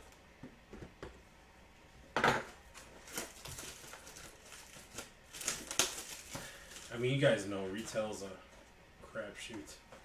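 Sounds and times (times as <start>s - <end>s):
packaging being ripped: 3.0s - 6.9s.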